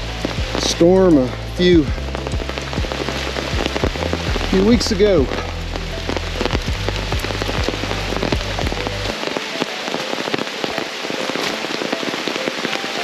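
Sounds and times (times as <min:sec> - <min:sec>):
low rumble: 0:00.0 - 0:09.1
rain drops ticking: 0:00.0 - 0:13.0.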